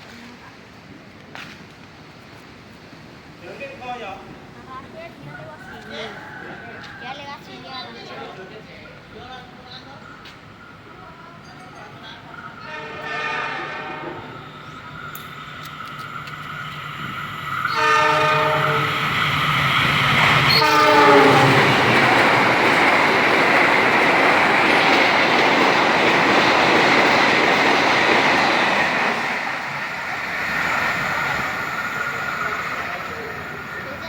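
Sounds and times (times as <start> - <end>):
wheels clattering on rails: 0.0 - 34.0
train horn: 12.6 - 15.3, 17.6 - 19.2, 20.4 - 22.2.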